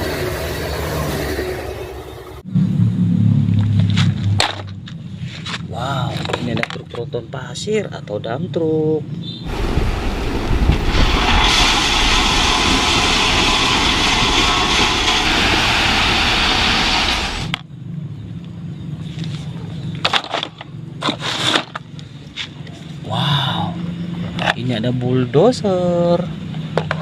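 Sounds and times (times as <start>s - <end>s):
toy truck rolling and scraping: 3.8s - 7.0s, 19.1s - 22.6s.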